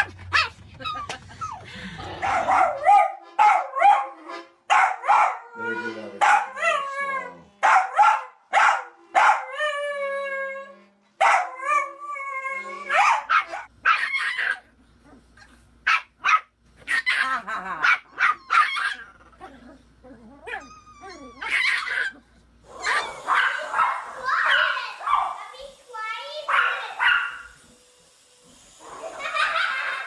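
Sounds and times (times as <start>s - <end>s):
small dog howling and barking: 2.3s - 14.7s, 16.3s - 19.4s, 20.1s - 25.4s.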